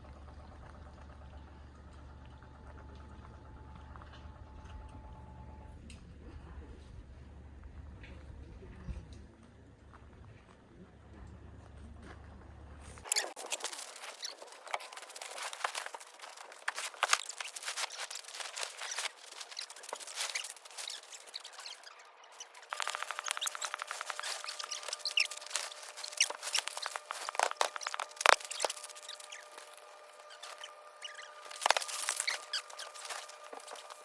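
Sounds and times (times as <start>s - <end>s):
rustling and clicking: 13.0s - 34.0s.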